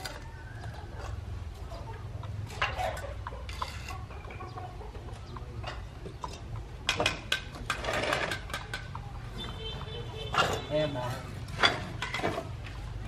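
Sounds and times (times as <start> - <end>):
chickens clucking: 0.0 - 10.6
sharp knocks and clicks: 5.2 - 10.7.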